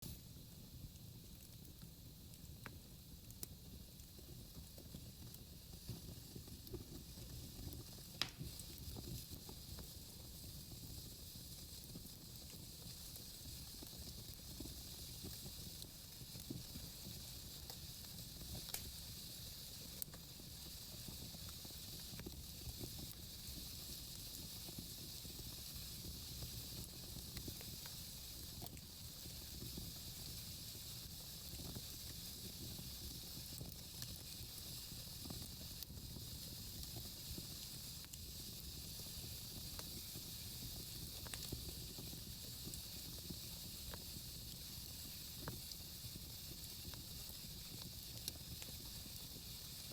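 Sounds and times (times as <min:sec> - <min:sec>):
fire hissing: 0:00.0 - 0:49.9
logs crackling and popping: 0:06.4 - 0:09.2, 0:18.4 - 0:18.9, 0:41.0 - 0:44.0.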